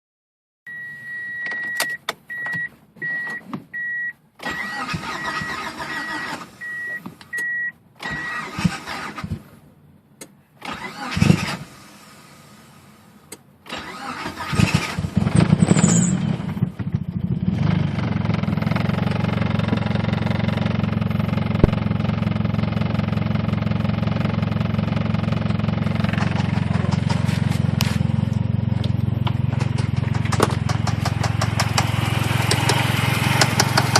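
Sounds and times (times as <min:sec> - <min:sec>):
car warning chime beeping: 0:00.7 - 0:08.6
car engine cranking and idling: 0:00.7 - 0:33.9
engine knocking: 0:25.4 - 0:27.4, 0:29.5 - 0:33.9.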